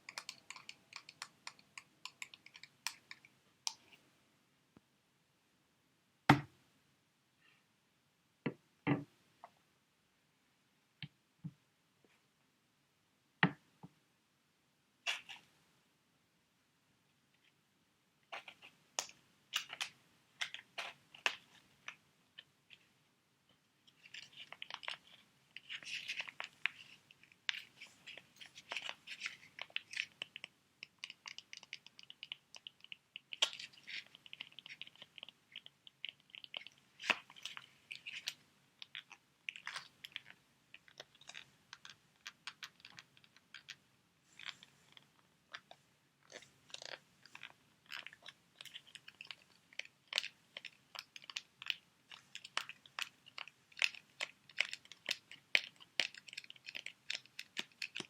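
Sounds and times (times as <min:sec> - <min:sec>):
plastic packets crinkling: 0:46.3 - 0:58.0.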